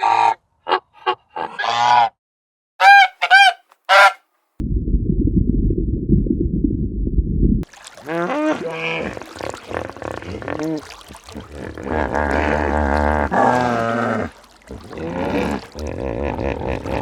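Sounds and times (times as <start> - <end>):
waterfowl honking: 2.8 - 4.2
low rumbling noise: 4.6 - 7.6.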